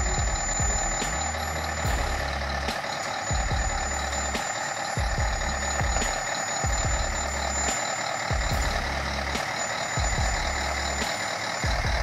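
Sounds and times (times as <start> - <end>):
low thuds: 0.0 - 4.4, 5.0 - 9.4, 10.0 - 11.1, 11.7 - 12.0
heavy truck running: 0.0 - 12.0.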